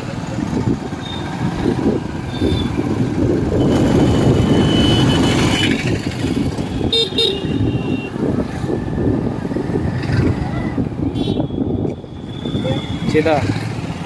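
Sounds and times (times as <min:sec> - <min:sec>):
road and engine rumble: 0:00.0 - 0:14.0
vehicle horns honking: 0:03.6 - 0:06.0, 0:06.7 - 0:08.2, 0:11.0 - 0:11.7.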